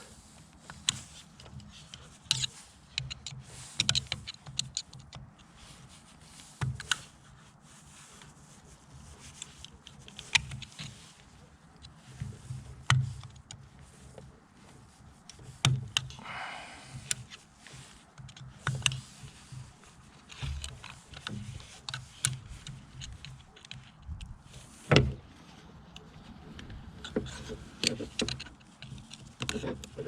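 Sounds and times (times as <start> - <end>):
clicks and knocks of metal parts: 0.6 - 5.5, 18.1 - 25.2, 25.9 - 30.0.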